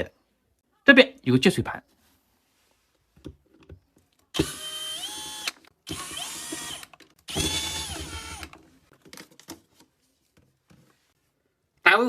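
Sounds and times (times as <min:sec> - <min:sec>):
cordless drill-driver bursts: 0:04.3 - 0:08.6.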